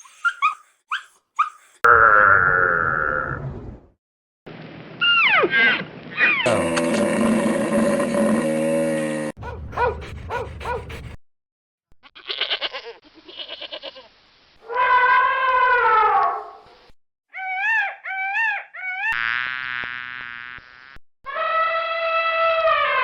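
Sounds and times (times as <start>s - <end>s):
animal calls: 0.0s - 1.7s, 17.3s - 19.2s
long drawn-out bleat: 6.5s - 9.4s, 12.1s - 15.9s.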